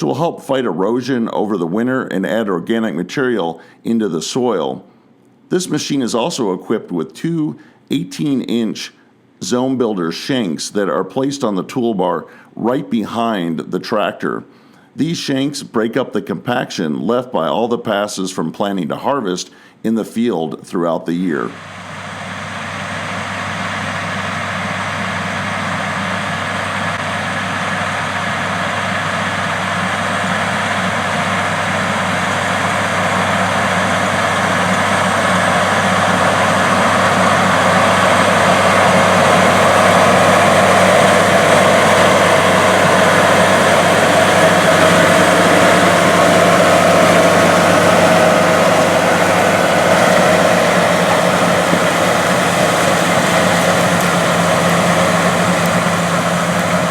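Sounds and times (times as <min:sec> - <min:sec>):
tractor diesel engine running: 0:21.5 - 0:56.9.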